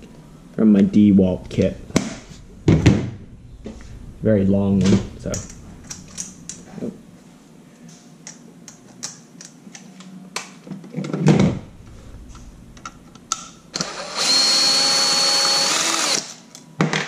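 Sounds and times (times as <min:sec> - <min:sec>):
loud thump: 0:02.0 - 0:03.3
power drill running: 0:13.7 - 0:16.4.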